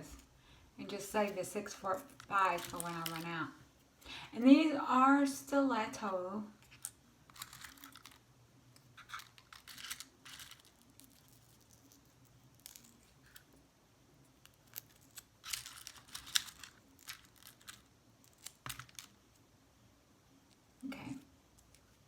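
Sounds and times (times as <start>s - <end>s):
packaging rustling: 1.9s - 3.4s, 6.7s - 8.2s, 8.8s - 13.5s, 14.5s - 19.1s.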